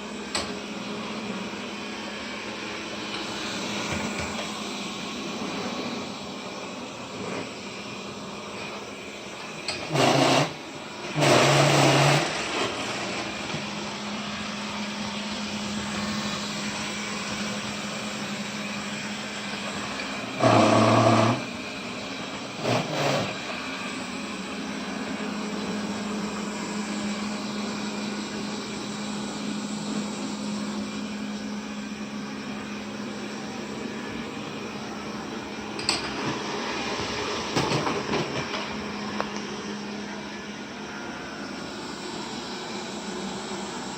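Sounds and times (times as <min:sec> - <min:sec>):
vacuum cleaner motor humming: 0:00.0 - 0:43.9.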